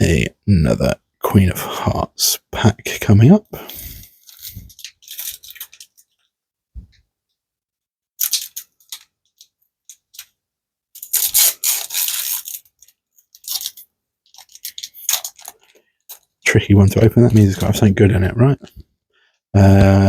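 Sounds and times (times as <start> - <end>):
foil wrapper crinkling and tearing: 4.2 - 6.3, 8.2 - 10.3, 11.0 - 16.3.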